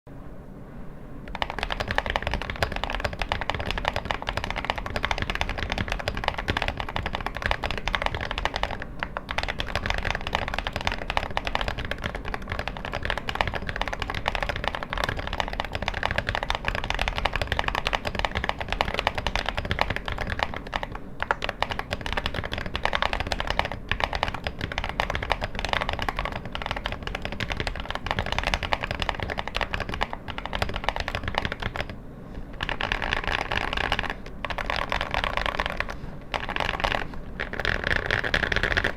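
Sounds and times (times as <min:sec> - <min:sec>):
mechanical keyboard typing: 0:01.3 - 0:38.9.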